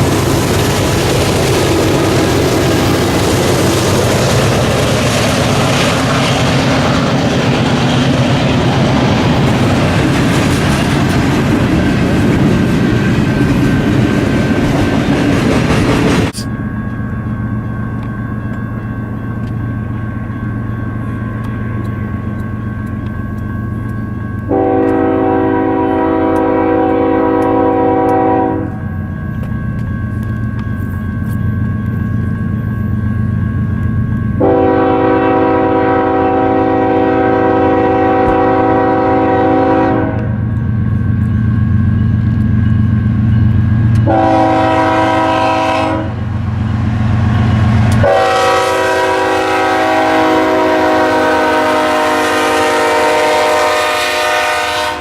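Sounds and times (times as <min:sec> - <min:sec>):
rumble of passing train: 0:00.0 - 0:55.0
train air horn blasts: 0:24.5 - 0:28.9, 0:34.4 - 0:40.4, 0:44.0 - 0:46.3, 0:47.9 - 0:55.0.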